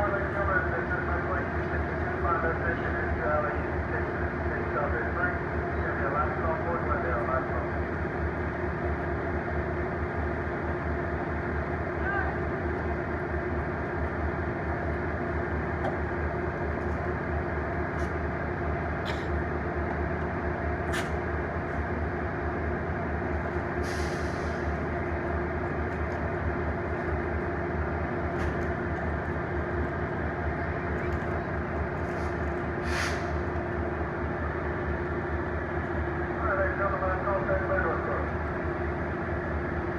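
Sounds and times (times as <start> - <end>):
diesel locomotive droning: 0.0 - 39.9
short hisses: 23.8 - 24.7, 32.2 - 33.4.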